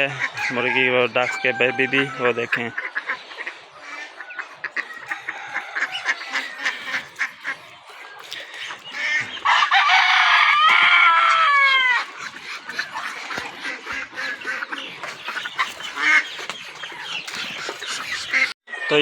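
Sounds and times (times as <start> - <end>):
farm bird calls: 0.0 - 19.0
rooster crowing: 0.3 - 2.6, 4.9 - 6.9, 9.4 - 12.1.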